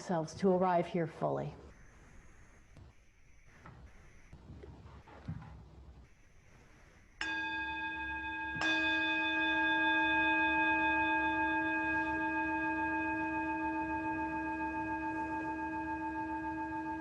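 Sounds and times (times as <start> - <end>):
meditation bell ringing: 7.2 - 17.0.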